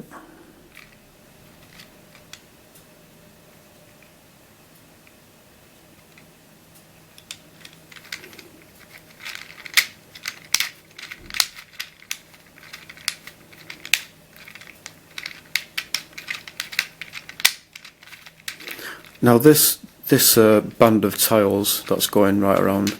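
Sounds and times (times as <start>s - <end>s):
plastic puzzle tiles clicking: 7.2s - 19.2s, 21.8s - 22.9s.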